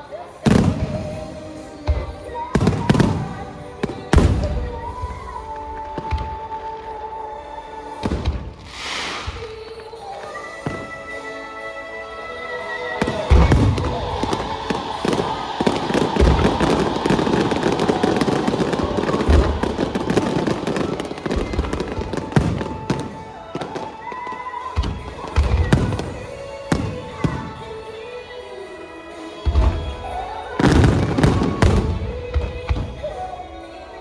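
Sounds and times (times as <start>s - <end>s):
music: 0.0s - 34.0s
fireworks booming: 0.4s - 5.2s, 8.0s - 9.6s, 13.0s - 24.2s, 24.8s - 27.7s, 30.6s - 33.1s
fireworks crackling: 0.4s - 34.0s.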